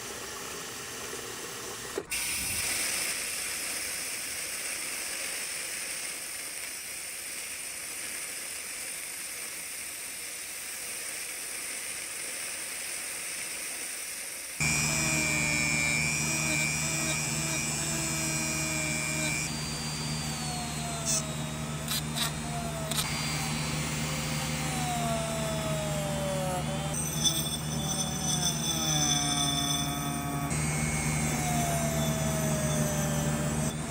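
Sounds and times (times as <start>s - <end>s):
small power tool motor whining: 14.6s - 33.9s.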